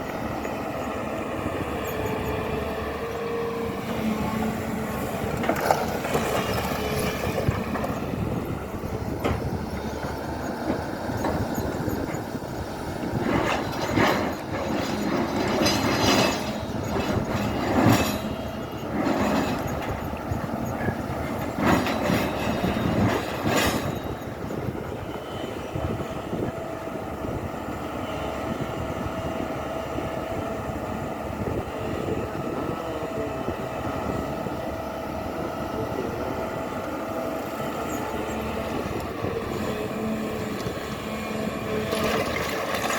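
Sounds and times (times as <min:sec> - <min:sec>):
excavator engine running: 0:00.0 - 0:42.9
metallic clanks and scrapes: 0:13.2 - 0:20.1, 0:21.3 - 0:24.3.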